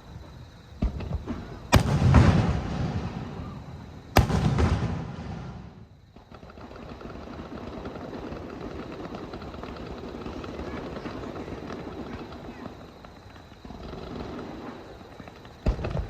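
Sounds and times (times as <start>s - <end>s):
firework bursting with a bang: 0.8s - 5.9s
firework crackling: 1.1s - 16.0s.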